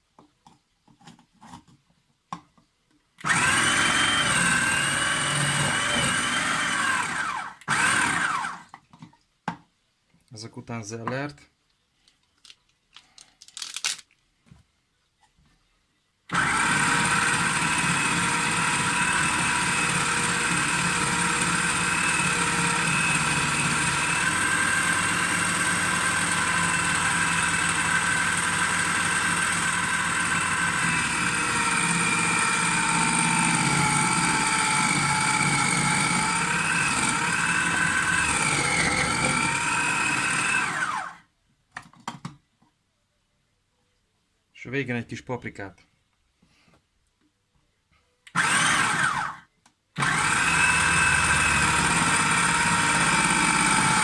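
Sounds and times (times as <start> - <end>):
electric food chopper whining: 3.2 - 8.8, 16.3 - 41.3, 48.3 - 54.0.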